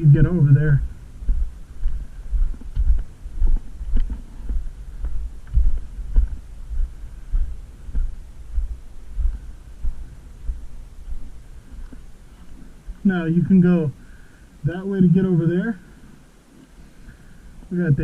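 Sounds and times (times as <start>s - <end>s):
dull footstep thumps: 1.2s - 12.0s.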